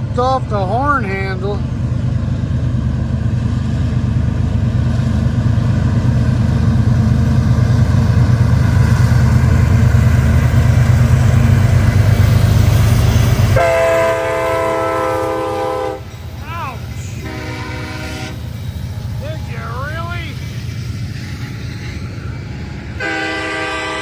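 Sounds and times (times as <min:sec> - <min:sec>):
diesel locomotives rumbling: 0:00.0 - 0:24.0
locomotive air horn chord: 0:13.6 - 0:16.1, 0:17.0 - 0:18.5, 0:23.0 - 0:24.0.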